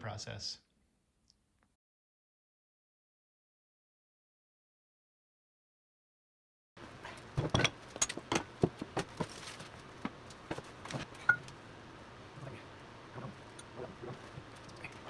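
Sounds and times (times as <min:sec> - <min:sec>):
hard objects clicking and knocking: 0:07.1 - 0:11.6.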